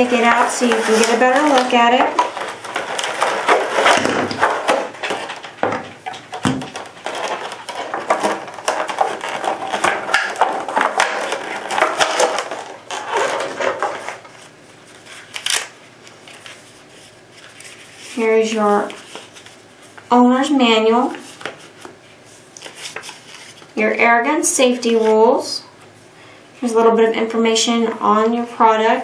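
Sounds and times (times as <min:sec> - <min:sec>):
box packaging rustling: 0:00.0 - 0:19.7.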